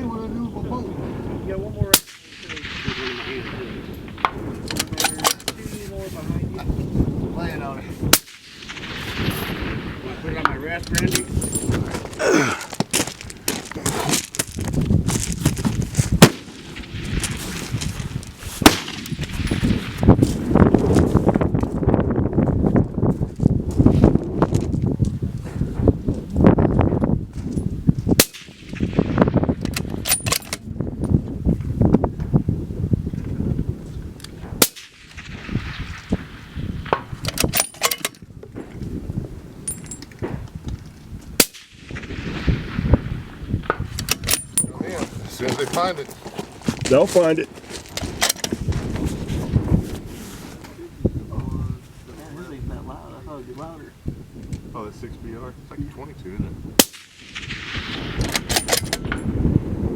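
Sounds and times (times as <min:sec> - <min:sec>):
suppressed rifle shots: 0:01.9 - 0:05.4, 0:08.1 - 0:11.6, 0:16.2 - 0:17.5, 0:18.6 - 0:20.2, 0:28.2 - 0:30.4, 0:34.6 - 0:38.0, 0:41.4 - 0:44.5, 0:56.8 - 0:59.2
rustling and handling noise: 0:10.9 - 0:16.2, 0:44.4 - 0:50.9.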